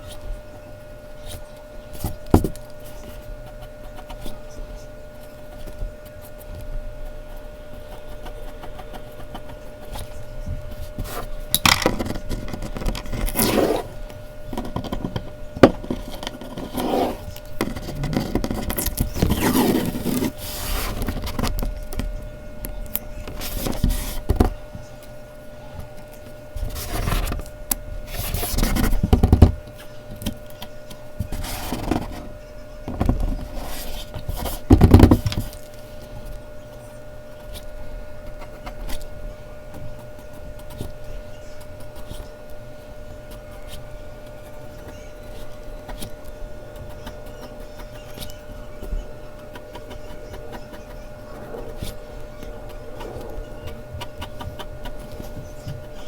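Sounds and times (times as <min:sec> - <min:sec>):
pencil scratching on paper: 0:01.2 - 0:22.2, 0:23.0 - 0:24.5, 0:26.6 - 0:29.5, 0:31.2 - 0:32.3, 0:32.9 - 0:35.6, 0:43.3 - 0:56.0
pencil scrapes: 0:12.0 - 0:14.0, 0:14.6 - 0:21.6, 0:28.1 - 0:29.0, 0:49.4 - 0:56.0.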